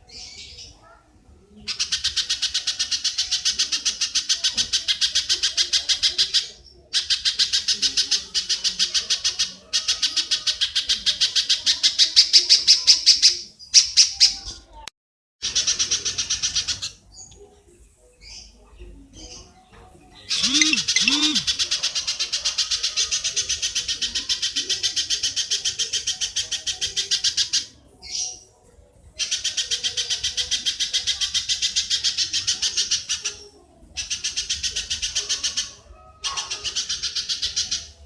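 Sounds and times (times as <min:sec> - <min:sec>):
bird chattering call: 0:20.3 - 0:21.6
short low bird calls: 0:20.3 - 0:21.6.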